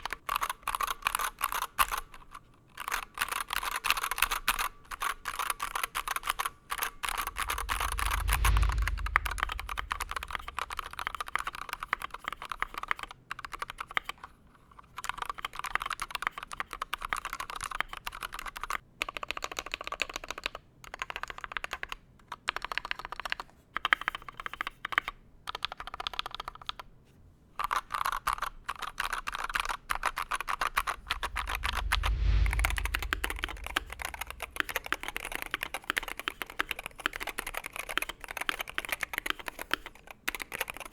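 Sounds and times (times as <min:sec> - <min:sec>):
low rumble: 0:07.1 - 0:11.6, 0:30.5 - 0:36.3.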